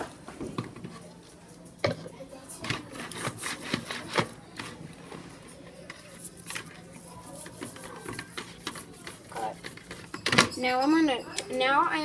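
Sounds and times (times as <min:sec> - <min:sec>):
bristles scraping: 0:05.9 - 0:10.6.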